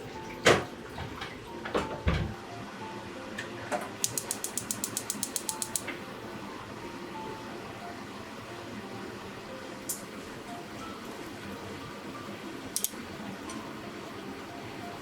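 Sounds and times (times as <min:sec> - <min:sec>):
fast run of clicks: 0:04.0 - 0:05.8.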